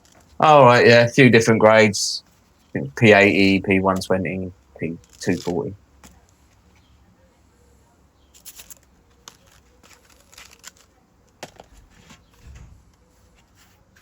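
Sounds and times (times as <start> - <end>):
packaging rustling and crinkling: 8.4 - 12.4.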